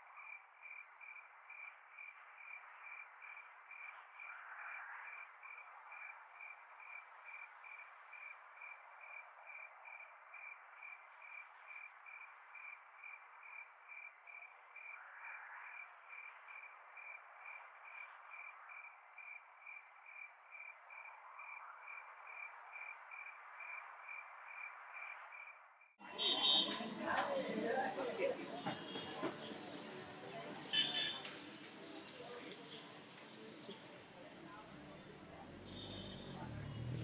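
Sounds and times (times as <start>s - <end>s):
high-pitched pulsing insect call: 0.0s - 26.7s
crickets and frogs chorus: 0.0s - 31.2s, 32.0s - 37.0s.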